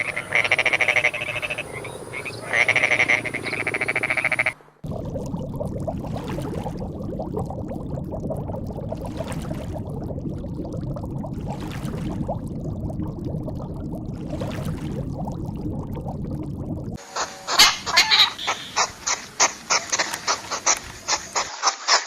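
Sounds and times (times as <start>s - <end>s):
frogs croaking in chorus: 0.0s - 4.6s.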